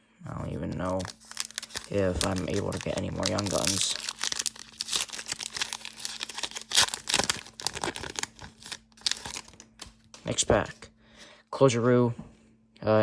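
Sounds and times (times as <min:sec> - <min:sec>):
wrapper crinkling and tearing: 0:00.4 - 0:10.4.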